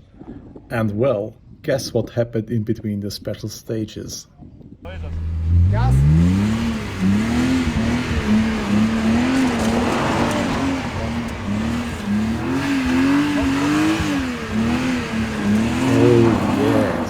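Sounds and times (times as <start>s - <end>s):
car engines revving high: 4.9s - 17.0s
tyres squealing: 4.9s - 17.0s.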